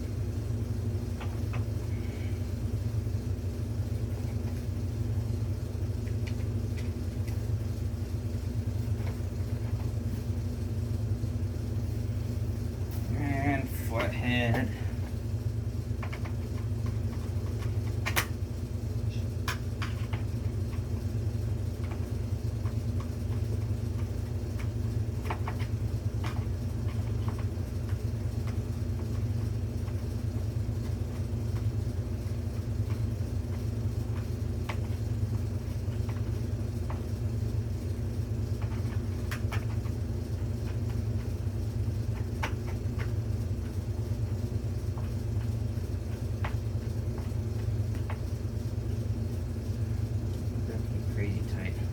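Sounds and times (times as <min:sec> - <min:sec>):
low background hum: 0:00.0 - 0:51.9
hand tools clicking and tapping: 0:16.0 - 0:18.3, 0:21.8 - 0:30.0, 0:38.6 - 0:41.4, 0:42.0 - 0:48.3.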